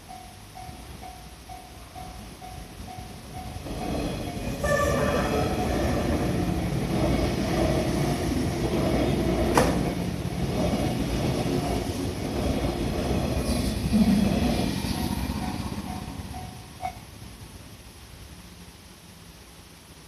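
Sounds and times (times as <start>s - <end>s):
train wheels rumbling on rails: 0.0s - 17.4s.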